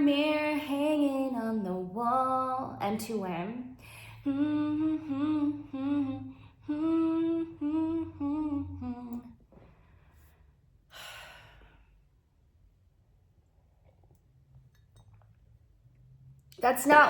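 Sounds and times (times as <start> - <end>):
woman humming: 4.1 - 9.5
breathy sigh: 10.9 - 11.9.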